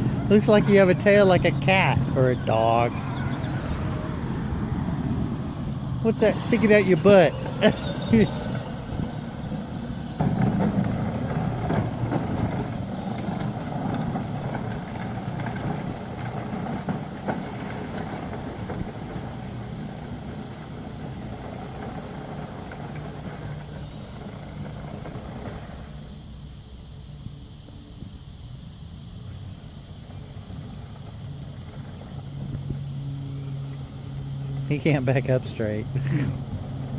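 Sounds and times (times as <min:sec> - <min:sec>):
electric ride-on toy motor whirring: 0:00.0 - 0:26.3.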